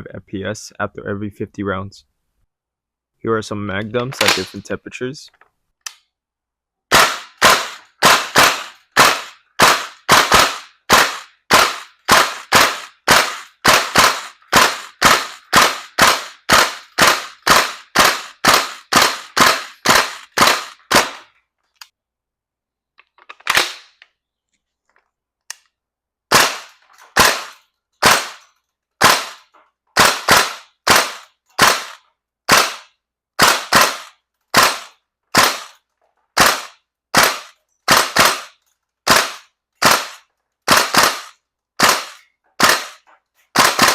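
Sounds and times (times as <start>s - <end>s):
airsoft rifle shots: 4.0s - 4.7s, 6.9s - 21.3s, 23.5s - 24.0s, 26.3s - 35.8s, 36.4s - 43.9s.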